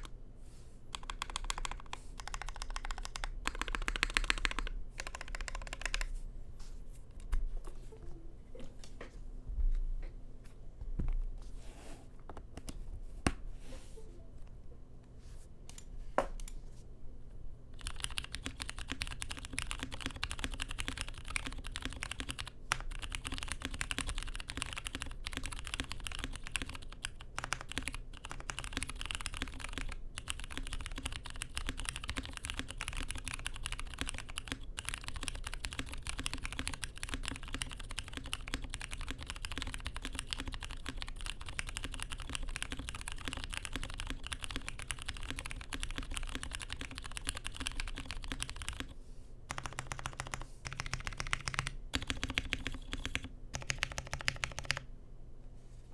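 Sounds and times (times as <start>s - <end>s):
mechanical keyboard typing: 0.9s - 6.1s, 17.8s - 54.9s.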